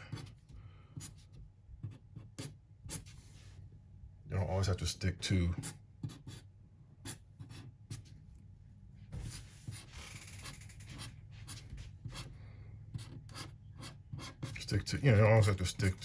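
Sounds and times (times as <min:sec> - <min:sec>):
pen drawing on paper: 0:09.3 - 0:12.3.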